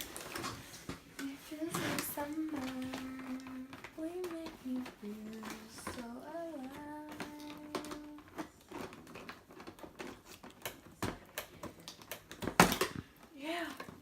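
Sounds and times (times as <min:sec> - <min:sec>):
packaging clatter: 0:00.0 - 0:13.2
packaging clicks and crinkles: 0:00.0 - 0:14.0
person humming: 0:01.6 - 0:08.3.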